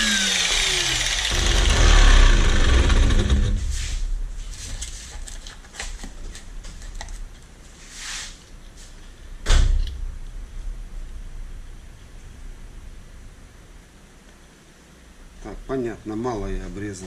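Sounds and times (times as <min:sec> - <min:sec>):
power tool motor winding down: 0:00.0 - 0:03.6.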